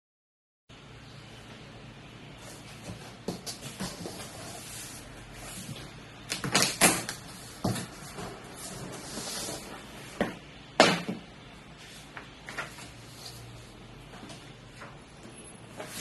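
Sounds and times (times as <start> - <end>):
cardboard scraping slide: 3.5 - 5.9, 7.4 - 10.2, 15.7 - 16.0
cardboard knocks and bumps: 6.4 - 8.4.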